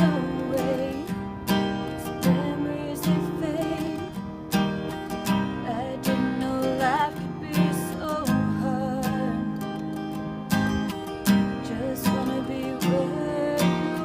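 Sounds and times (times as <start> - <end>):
person singing: 0.0 - 4.2, 5.4 - 9.8, 11.4 - 14.0
acoustic guitar strumming: 0.0 - 14.0.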